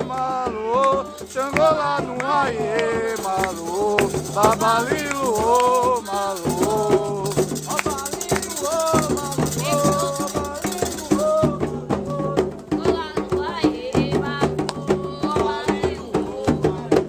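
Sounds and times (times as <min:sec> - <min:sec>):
drums: 0:00.0 - 0:17.0
group singing: 0:00.0 - 0:17.0
shaken rattle: 0:00.3 - 0:11.9.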